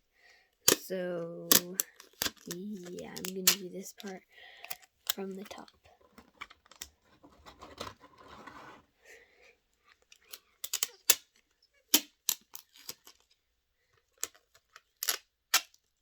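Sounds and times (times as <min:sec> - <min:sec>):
rustle of toy pieces: 0:01.5 - 0:08.8, 0:10.0 - 0:13.4, 0:14.0 - 0:16.0.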